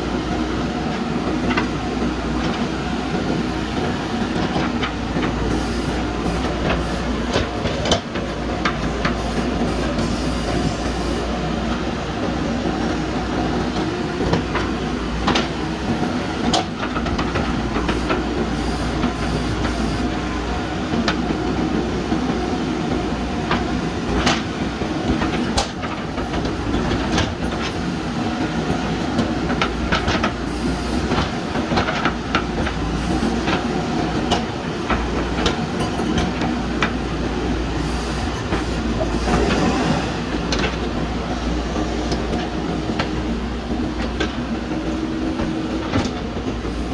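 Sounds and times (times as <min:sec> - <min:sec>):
diesel engine running: 0:00.0 - 0:22.3.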